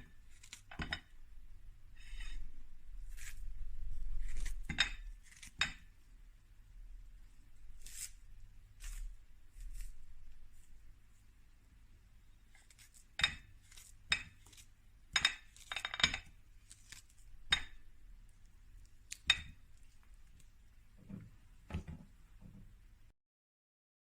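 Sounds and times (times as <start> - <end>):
utensil clinking against a dish: 15.1 - 16.3.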